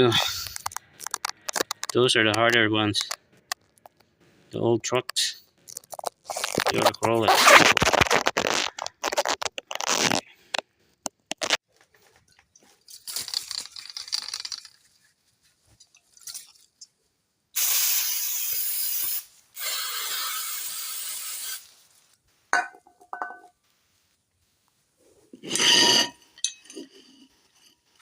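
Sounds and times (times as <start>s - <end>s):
aerosol can spraying: 17.6s - 21.7s.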